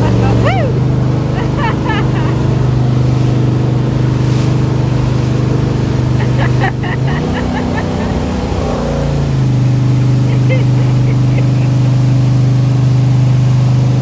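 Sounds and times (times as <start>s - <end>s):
jet boat engine running: 0.0s - 14.0s.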